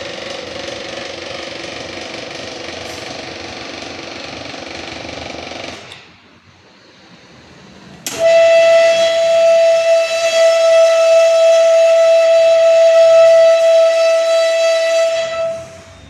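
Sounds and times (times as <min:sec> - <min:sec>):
loud whistle-like tone: 0:08.1 - 0:16.0.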